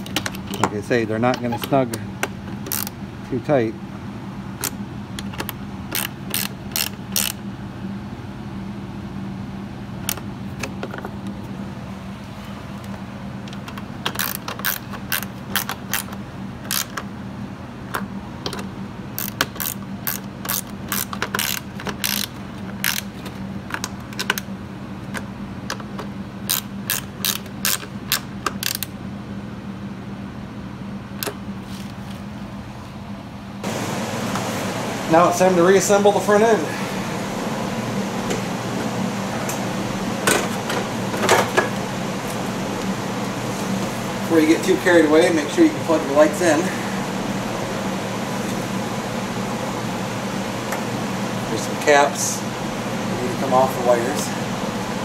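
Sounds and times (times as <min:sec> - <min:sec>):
steady low hum: 0:00.0 - 0:55.0
hand ratchet clicking: 0:02.6 - 0:02.9, 0:04.6 - 0:07.4, 0:14.0 - 0:17.0, 0:19.2 - 0:24.4, 0:26.5 - 0:28.9.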